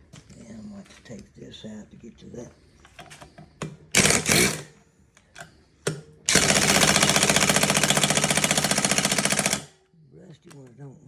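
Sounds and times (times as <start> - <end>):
impact wrench hammering: 3.6 - 4.7, 5.8 - 9.7.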